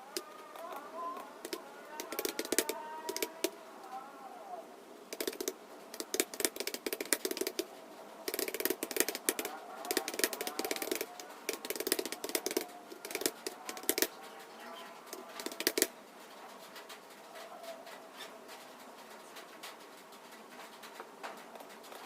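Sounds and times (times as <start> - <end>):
computer keyboard typing: 0.0 - 3.6, 5.1 - 16.0.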